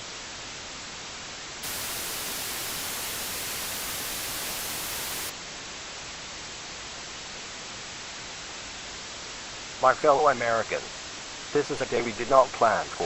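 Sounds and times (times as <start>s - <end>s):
steady dull hiss: 1.3s - 13.0s
bright hissing static: 1.6s - 5.3s.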